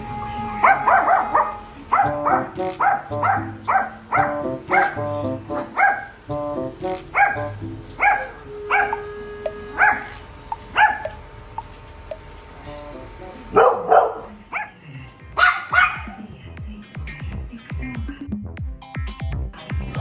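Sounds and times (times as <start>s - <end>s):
background music: 0.0s - 10.9s, 12.6s - 14.2s
dog barking: 0.6s - 6.2s, 7.1s - 9.0s, 9.8s - 11.2s, 13.5s - 14.8s, 15.4s - 16.2s.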